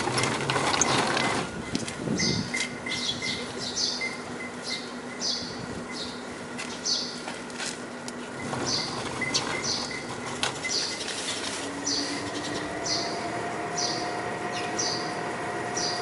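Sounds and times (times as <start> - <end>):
sparrow chirping: 2.2 - 7.2, 8.4 - 16.0.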